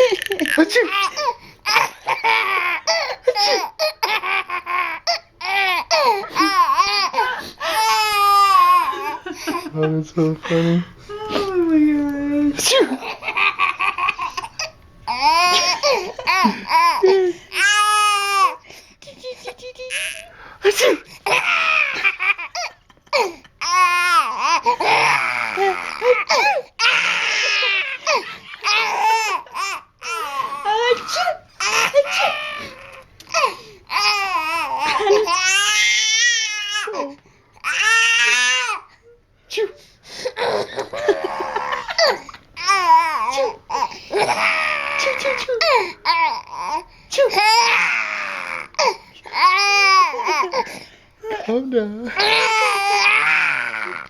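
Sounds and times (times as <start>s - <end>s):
child crying: 0.0s - 9.3s, 14.0s - 18.6s, 19.6s - 20.3s, 23.6s - 38.8s, 40.4s - 50.6s, 52.2s - 54.0s
small boy laughing hysterically: 0.0s - 9.7s, 12.6s - 18.5s, 21.2s - 36.4s, 40.4s - 43.2s.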